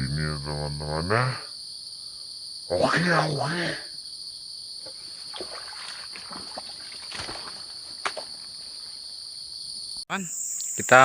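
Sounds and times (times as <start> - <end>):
crickets chirping: 0.0 - 11.0
water sloshing and splashing: 4.9 - 8.8.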